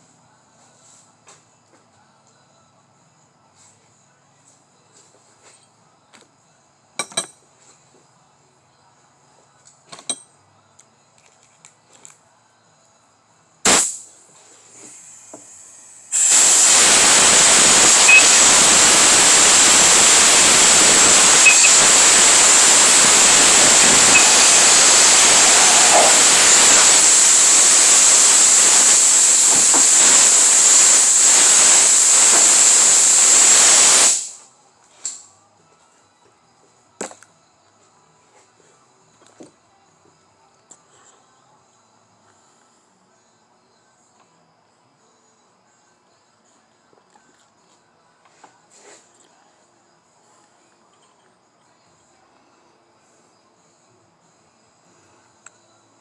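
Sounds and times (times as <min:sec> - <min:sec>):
loud steady hiss: 0:13.6 - 0:34.5.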